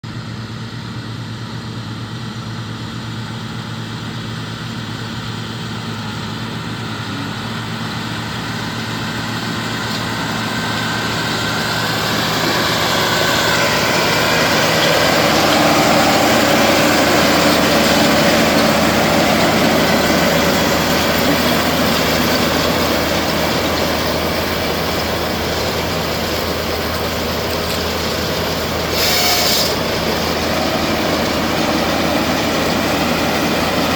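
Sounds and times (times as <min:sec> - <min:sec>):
tractor diesel engine under load: 0:00.0 - 0:33.9
baler working: 0:04.1 - 0:33.9.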